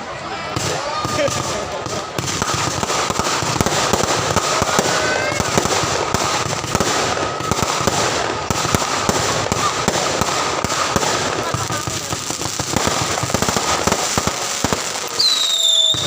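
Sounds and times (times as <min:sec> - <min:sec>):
fireworks bangs and crackling: 0:00.0 - 0:16.0
high firework whistle: 0:15.0 - 0:16.0.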